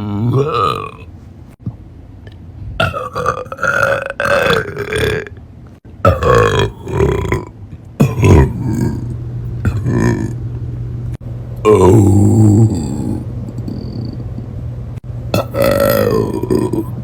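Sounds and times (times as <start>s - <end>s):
person burping loudly: 0.0s - 1.1s, 2.8s - 5.4s, 6.0s - 10.4s, 11.6s - 14.2s, 15.3s - 17.0s.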